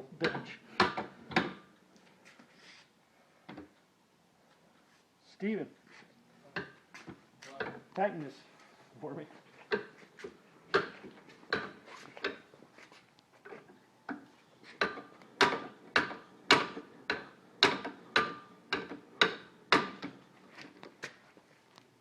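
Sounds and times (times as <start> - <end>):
metal vise clicks and clanks: 10.7 - 12.5, 13.4 - 20.2.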